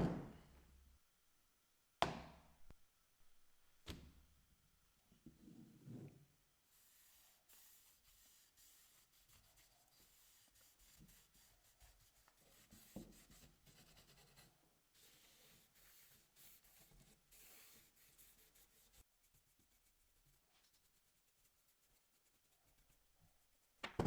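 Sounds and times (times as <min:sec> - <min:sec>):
scratchy rubbing on surface: 0:06.7 - 0:23.8.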